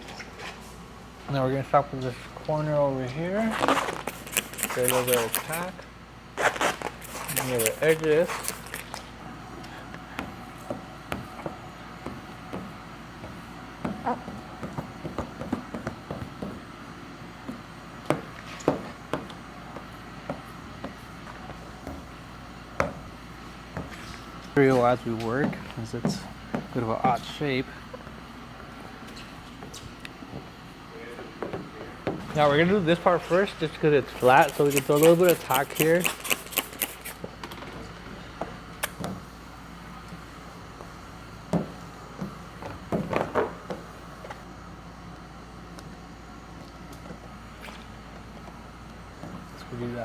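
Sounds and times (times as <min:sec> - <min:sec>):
steady low hum: 0:00.0 - 0:50.0
hands tapping on vehicle panel: 0:10.2 - 0:16.7, 0:17.5 - 0:21.0.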